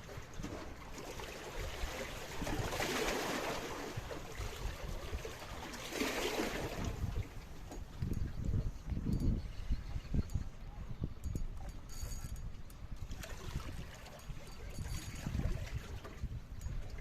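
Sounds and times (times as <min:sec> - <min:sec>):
water sloshing and splashing: 0:00.0 - 0:08.2, 0:13.0 - 0:17.0.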